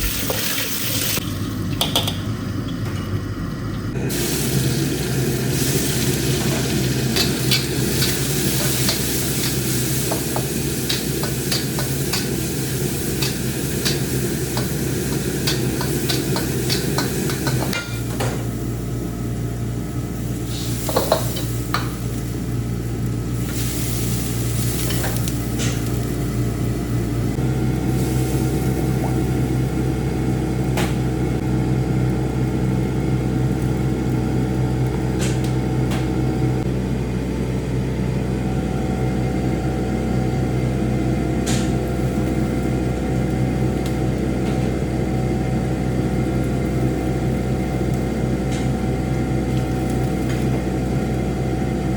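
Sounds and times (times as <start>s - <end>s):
low burner hum: 0.0s - 51.9s
food sizzling: 4.0s - 35.2s.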